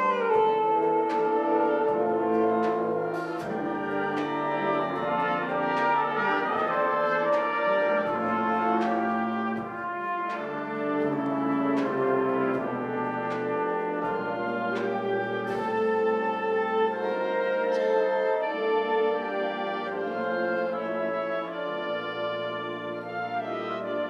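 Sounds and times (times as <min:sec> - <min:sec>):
percussion hits: 0:00.0 - 0:17.1
brass ensemble playing chords: 0:00.0 - 0:24.0.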